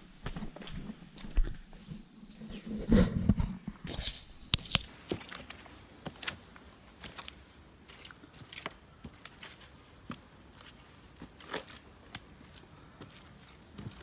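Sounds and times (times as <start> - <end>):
footsteps on a trail: 0.0 - 2.0, 4.9 - 14.0.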